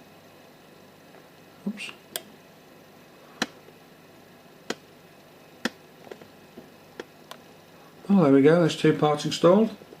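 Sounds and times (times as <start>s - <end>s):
sharp clicks and taps: 4.7s - 4.9s, 5.6s - 6.3s.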